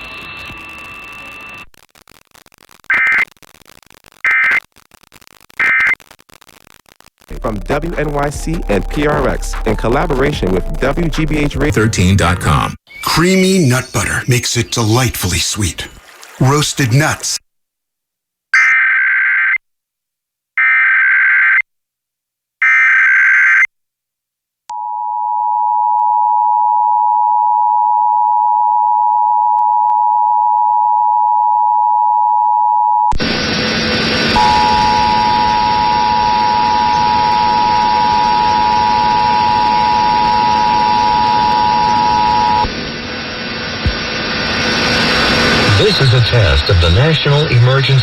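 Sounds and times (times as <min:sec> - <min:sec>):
screeching data bursts: 0:00.0 - 0:07.4, 0:33.4 - 0:48.0
radio hiss: 0:00.0 - 0:17.4, 0:33.2 - 0:48.0
two-tone attention signal: 0:34.4 - 0:42.7.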